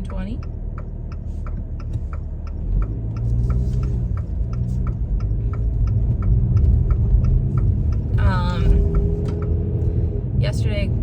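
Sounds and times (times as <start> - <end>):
fast even ticking: 0.0 - 9.6
car engine and road rumble: 0.0 - 11.0.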